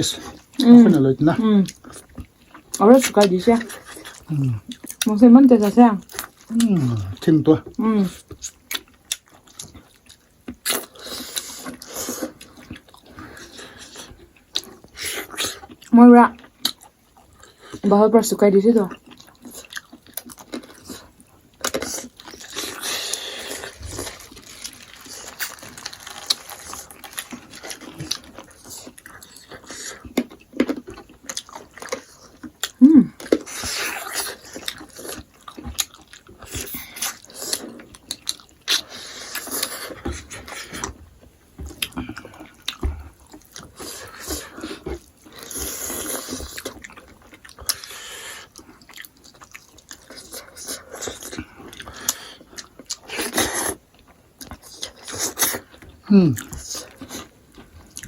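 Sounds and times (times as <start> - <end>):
people chewing and eating: 0.0 - 58.0
person humming briefly: 32.8 - 33.1.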